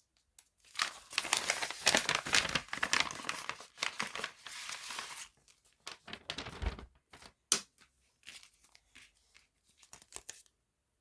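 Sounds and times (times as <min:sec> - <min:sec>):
crinkling and rustling: 0:00.6 - 0:07.5.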